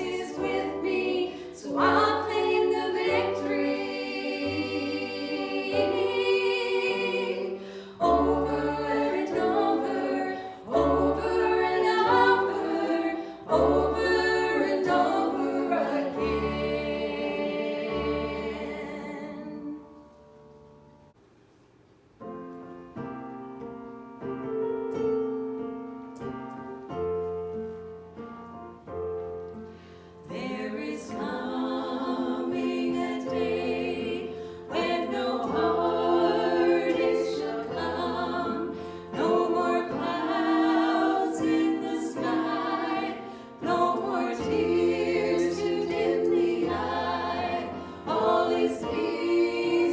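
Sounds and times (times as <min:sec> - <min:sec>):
congregation singing: 0:00.0 - 0:20.2, 0:30.2 - 0:49.9.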